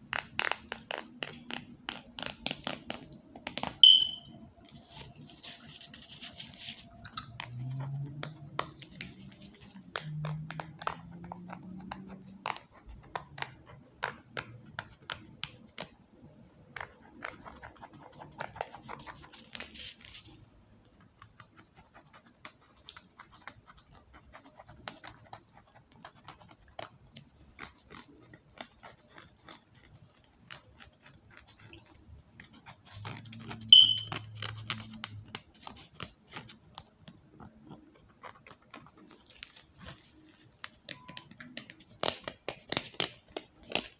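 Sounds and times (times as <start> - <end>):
short high-pitched sound: 3.8 - 4.3, 33.7 - 34.1.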